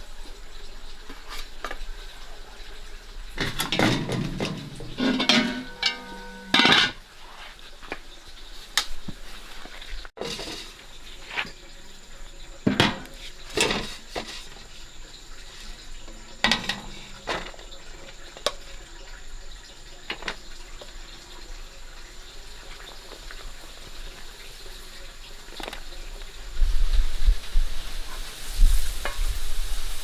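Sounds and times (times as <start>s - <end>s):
faint steady hiss: 0.0s - 30.0s
pots and utensils clanking: 3.4s - 7.0s, 10.1s - 11.7s, 12.5s - 20.9s, 28.1s - 29.5s.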